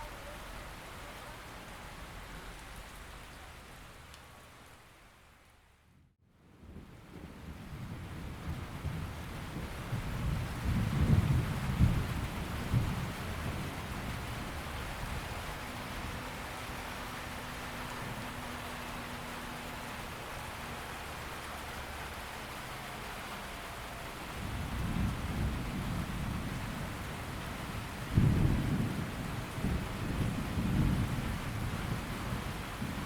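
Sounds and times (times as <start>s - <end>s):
steady rain falling: 0.0s - 33.0s
thunder rumbling: 6.7s - 19.2s, 24.3s - 33.0s.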